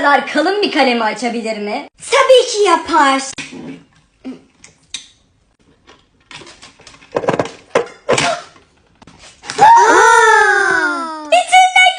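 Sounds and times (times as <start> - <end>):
loud pitched falling wail: 9.6 - 11.3.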